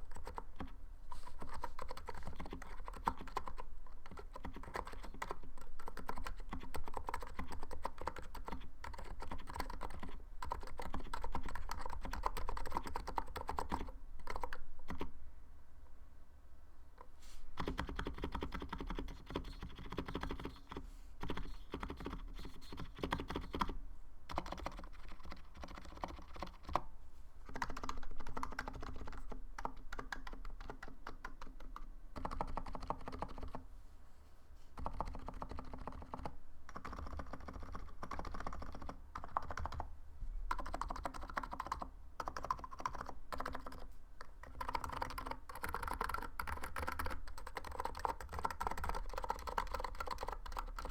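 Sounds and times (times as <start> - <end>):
keyboard typing: 0.1 - 15.1, 17.6 - 26.8, 27.4 - 33.6, 34.8 - 39.9, 40.5 - 50.9.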